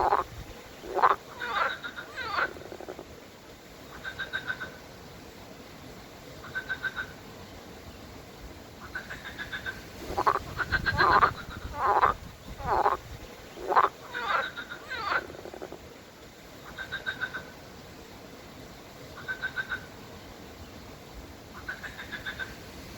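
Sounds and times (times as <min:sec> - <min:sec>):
frogs croaking: 0:00.0 - 0:05.0, 0:06.4 - 0:07.3, 0:08.7 - 0:17.7, 0:19.0 - 0:20.0, 0:21.5 - 0:22.6.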